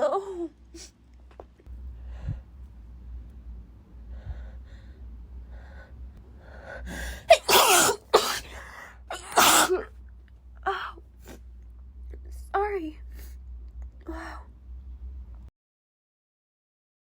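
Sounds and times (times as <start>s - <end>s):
catching breaths: 4.0s - 7.3s
woman sneezing: 7.3s - 8.5s, 9.1s - 9.9s.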